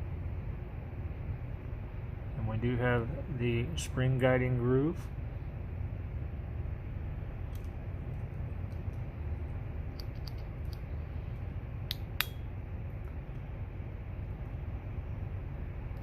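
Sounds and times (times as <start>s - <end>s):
steady low hum: 0.0s - 16.0s
pocket knife tools clicking: 9.9s - 10.8s.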